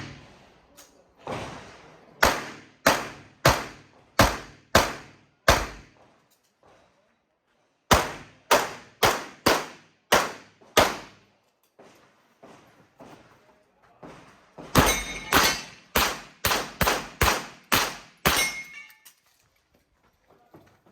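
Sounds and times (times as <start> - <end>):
pistol shots: 2.2 - 5.9, 7.9 - 11.2, 14.8 - 18.7.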